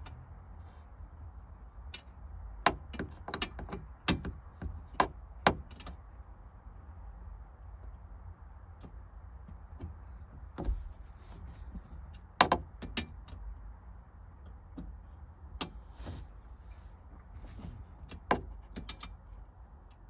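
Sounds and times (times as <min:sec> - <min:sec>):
low steady rumble: 0:00.0 - 0:20.0
metal clicks and knocks of tools: 0:12.1 - 0:13.5, 0:18.1 - 0:19.2.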